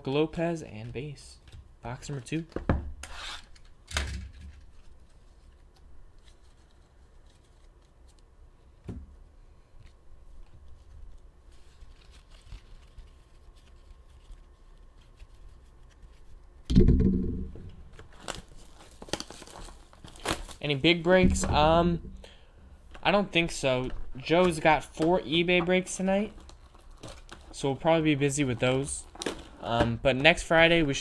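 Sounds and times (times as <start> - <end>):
sharp knock: 16.7 - 17.7.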